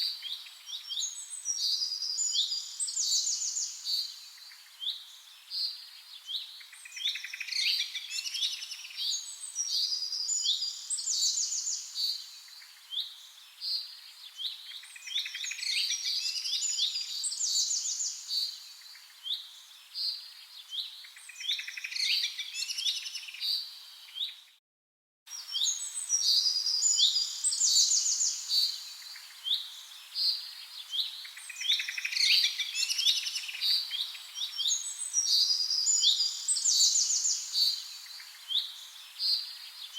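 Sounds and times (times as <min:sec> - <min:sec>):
small birds chirping and singing: 0:00.0 - 0:24.6, 0:25.3 - 0:39.9.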